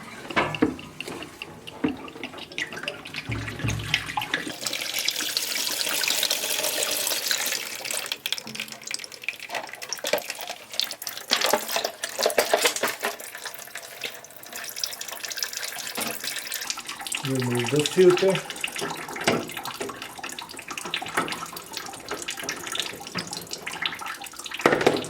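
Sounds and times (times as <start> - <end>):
water draining and splashing: 0.0 - 25.0
low thump: 3.3 - 4.4
sharp knocks and clicks: 3.3 - 4.5.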